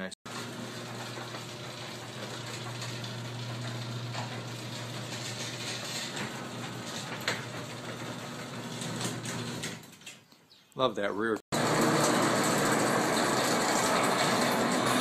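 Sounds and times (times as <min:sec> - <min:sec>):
garage door opener motor hum: 0:00.3 - 0:10.1, 0:11.5 - 0:15.0.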